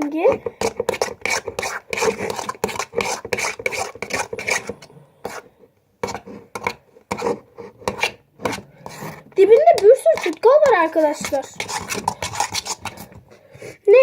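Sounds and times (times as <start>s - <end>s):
spoon scraping slime on a plate: 0.1s - 13.8s.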